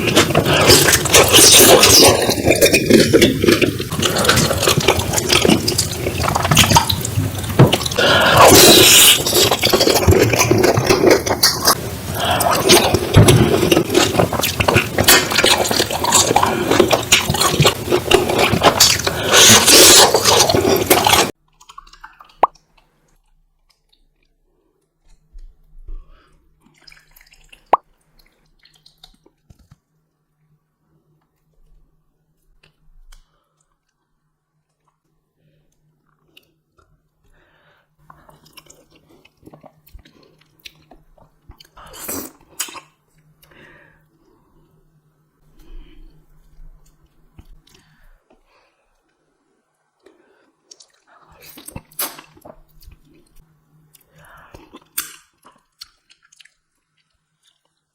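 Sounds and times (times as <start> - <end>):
loud dense eating noise: 0.0 - 24.4, 35.8 - 48.0, 50.0 - 57.9
wet chewing: 0.0 - 24.4, 26.6 - 29.7, 38.0 - 43.6, 50.0 - 57.9.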